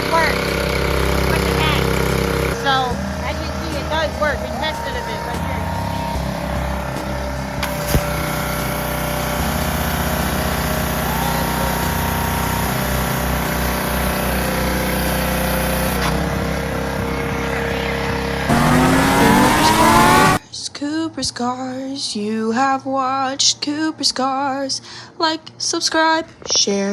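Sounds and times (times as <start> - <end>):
loud gliding tones: 0.0 - 20.4
pressure washer engine running: 0.0 - 20.4.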